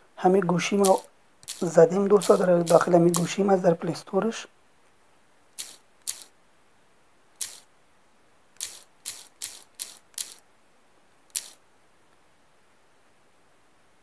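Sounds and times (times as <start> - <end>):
phone keyboard key clicks: 0.8 - 3.3.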